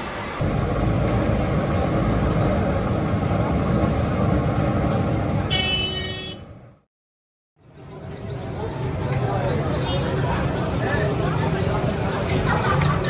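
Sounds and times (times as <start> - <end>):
street traffic rumbling: 0.0 - 6.8, 7.6 - 13.0
high-pitched vehicle horn toot: 5.5 - 6.5.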